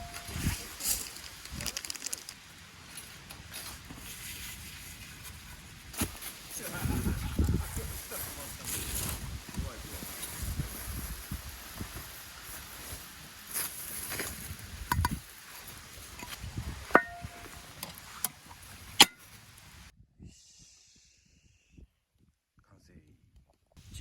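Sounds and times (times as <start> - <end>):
sharp knocks with metallic ring: 0.0 - 0.4, 16.9 - 17.6
outdoor background noise: 0.0 - 24.0.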